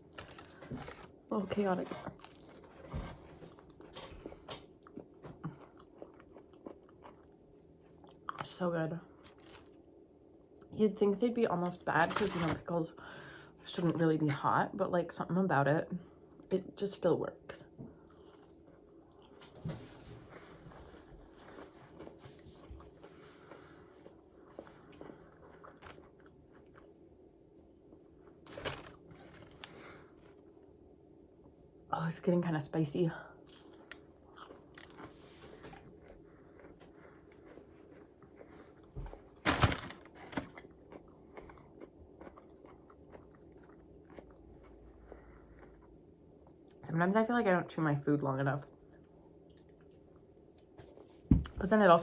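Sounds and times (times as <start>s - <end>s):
chewing crunchy food: 0.0s - 9.9s, 17.9s - 19.7s, 20.5s - 30.5s, 33.4s - 46.8s, 48.7s - 51.0s
crunchy bite and chewing: 33.5s - 46.6s.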